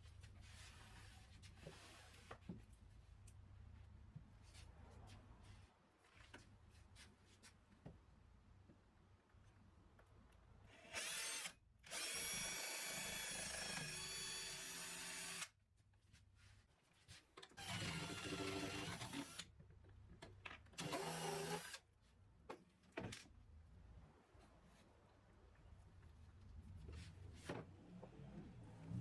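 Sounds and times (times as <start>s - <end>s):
power drill running: 10.9s - 15.5s, 17.6s - 19.4s, 20.8s - 21.8s.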